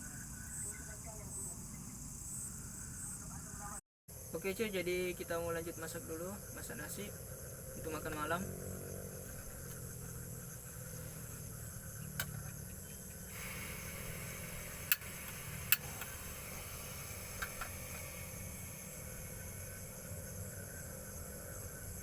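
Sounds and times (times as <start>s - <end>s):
high insect drone: 0.0s - 22.0s.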